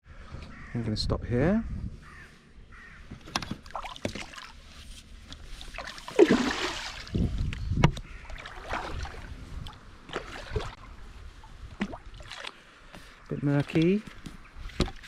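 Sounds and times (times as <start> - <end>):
paddle splashing in water: 3.3 - 7.2, 8.0 - 13.1, 14.4 - 15.0.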